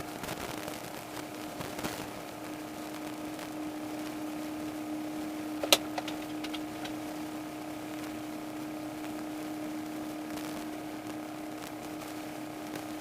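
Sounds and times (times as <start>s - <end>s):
steady mechanical hum: 0.0s - 13.0s
sharp clicks: 5.6s - 7.0s.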